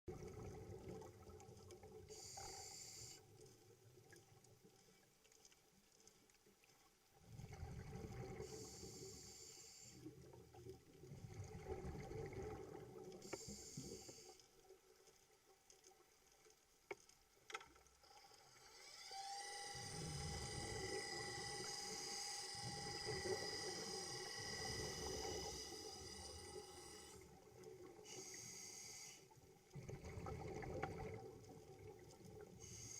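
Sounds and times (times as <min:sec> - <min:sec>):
underwater noise: 0:00.1 - 0:32.9
breathing through snorkel gear: 0:13.2 - 0:14.4, 0:28.0 - 0:29.3
boat motor whine: 0:18.7 - 0:27.2.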